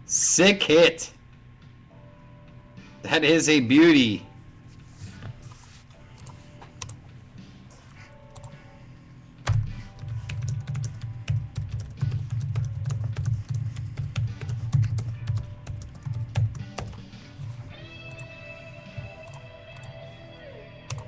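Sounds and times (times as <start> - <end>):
typing on computer keyboard: 9.5 - 17.0.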